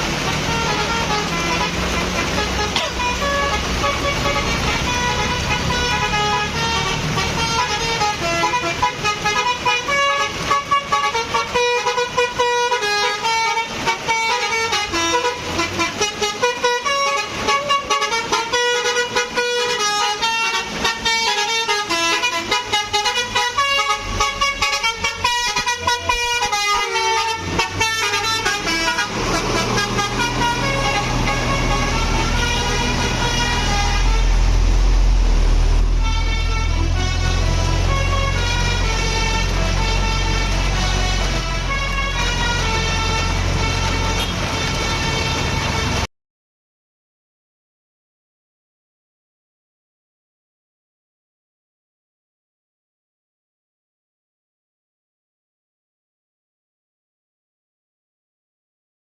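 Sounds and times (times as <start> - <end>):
bus engine rumbling: 0.0 - 46.1
multi-tone air horn: 0.4 - 34.6, 35.9 - 46.1.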